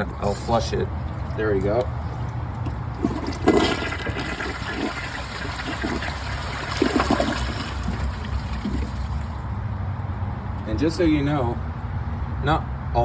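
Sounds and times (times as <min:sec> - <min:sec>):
toilet flushing: 0:00.0 - 0:09.6.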